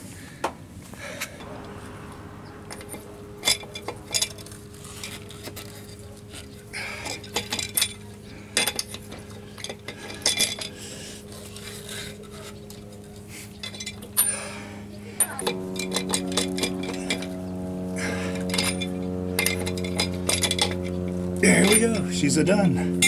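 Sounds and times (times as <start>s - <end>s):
steady low hum: 0.0s - 23.0s
lug wrench clanking on nuts: 6.8s - 10.8s, 18.4s - 20.9s.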